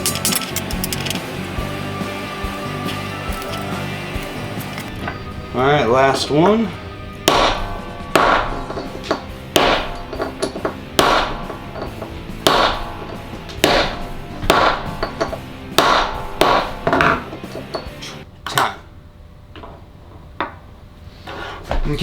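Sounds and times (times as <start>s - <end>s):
sharp metal strikes: 0.0s - 1.4s, 7.3s - 17.2s
background music: 0.0s - 18.3s.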